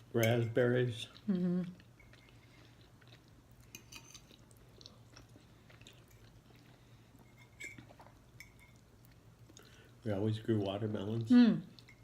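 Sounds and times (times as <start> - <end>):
faint chewing: 1.0 - 10.0.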